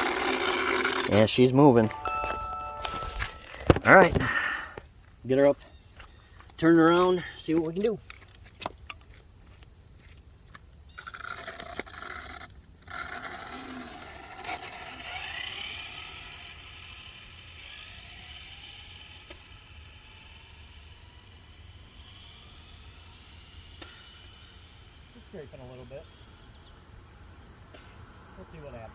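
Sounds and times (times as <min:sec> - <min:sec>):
electric toy car motor whine: 0:00.0 - 0:04.8, 0:10.9 - 0:28.9
outdoor background noise: 0:00.0 - 0:28.9.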